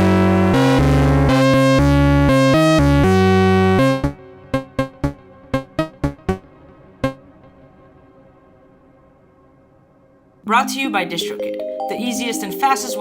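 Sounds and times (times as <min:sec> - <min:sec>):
synthesizer chords with bass line: 0:00.0 - 0:07.8.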